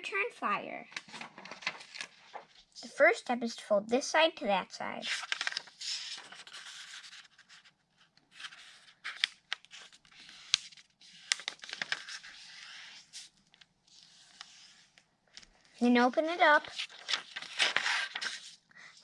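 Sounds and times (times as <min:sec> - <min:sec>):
paper rustling and scraping: 0:00.9 - 0:02.7, 0:05.0 - 0:15.0, 0:16.4 - 0:18.6.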